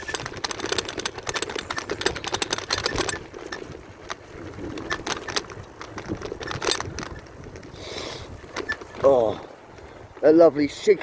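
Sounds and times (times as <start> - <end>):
raindrops tapping on a jacket: 0.0 - 7.8.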